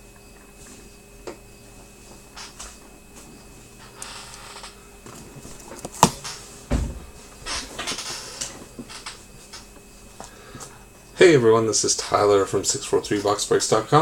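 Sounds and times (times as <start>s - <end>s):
dull thump: 5.9s - 7.2s.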